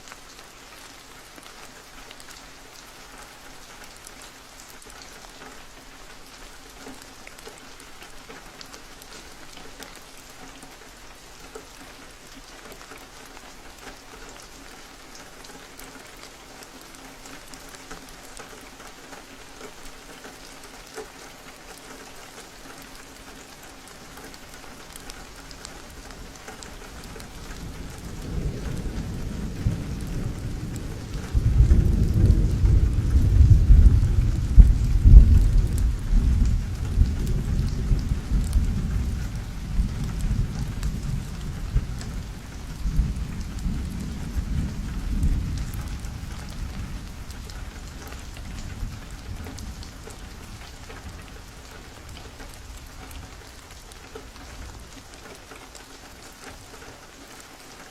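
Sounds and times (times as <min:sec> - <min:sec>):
steady rain falling: 0:00.0 - 0:57.9
thunder rumbling: 0:25.4 - 0:53.6.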